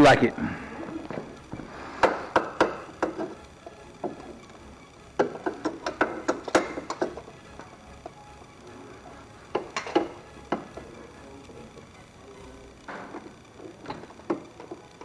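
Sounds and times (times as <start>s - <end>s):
tools and parts clicking and knocking: 2.0s - 4.3s, 5.2s - 7.7s, 9.5s - 10.9s.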